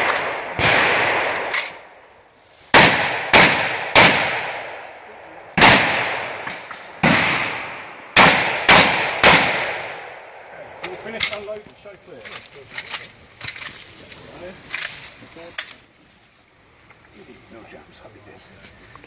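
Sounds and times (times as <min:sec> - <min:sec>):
shotgun shots echoing: 0:00.0 - 0:02.0, 0:02.7 - 0:05.0, 0:05.6 - 0:11.0.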